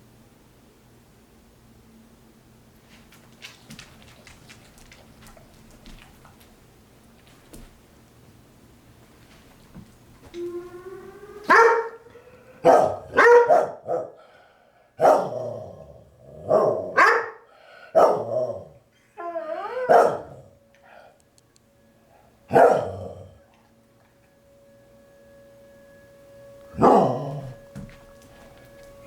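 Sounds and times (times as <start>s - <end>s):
tornado siren tone: 9.2s - 17.0s, 19.1s - 29.0s
dog howling: 10.2s - 14.2s, 15.0s - 21.1s, 22.1s - 24.6s, 25.9s - 29.0s
dogs barking: 11.1s - 14.2s, 15.0s - 15.7s, 16.4s - 18.7s, 19.6s - 20.5s, 22.5s - 23.4s, 26.8s - 27.6s.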